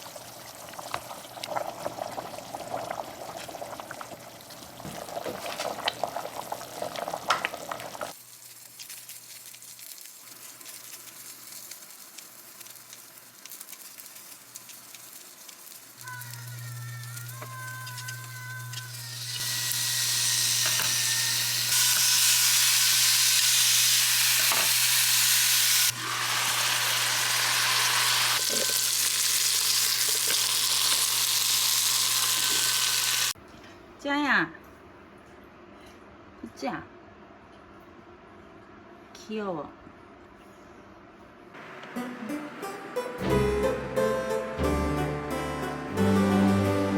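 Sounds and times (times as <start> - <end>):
food sizzling in a hot pan: 7.8 - 33.4.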